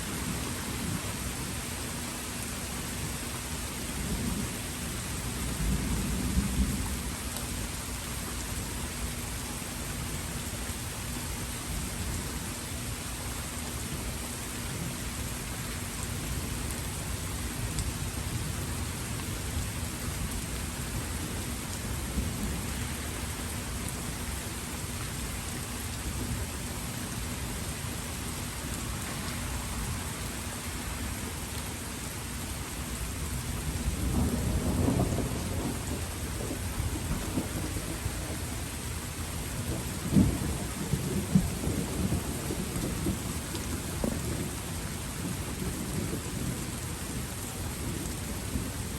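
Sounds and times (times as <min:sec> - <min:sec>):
rain hissing: 0:00.0 - 0:48.9
thunder rumbling: 0:33.7 - 0:38.8, 0:39.6 - 0:46.6.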